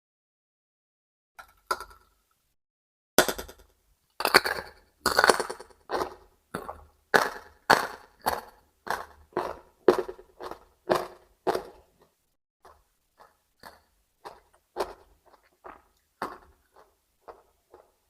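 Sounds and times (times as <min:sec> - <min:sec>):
crunchy chewing of raw vegetable: 0:04.4 - 0:12.1, 0:12.7 - 0:18.0.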